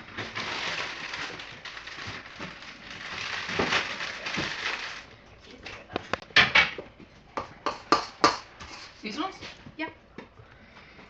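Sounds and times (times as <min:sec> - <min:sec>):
packaging rustling and crinkling: 0:00.0 - 0:05.1.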